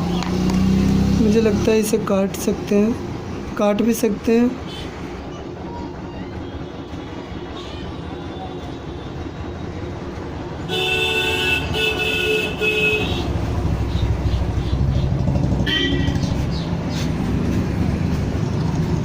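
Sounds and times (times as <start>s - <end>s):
engines rumbling past: 0.0s - 19.0s
vehicle horn honking: 10.7s - 13.4s, 15.6s - 16.2s.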